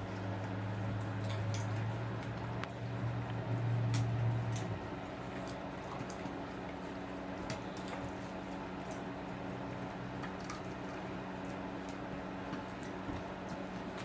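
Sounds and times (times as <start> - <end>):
popcorn crunching: 0.0 - 9.2
animals chewing and licking: 0.0 - 14.0
steady low hum: 0.0 - 14.0.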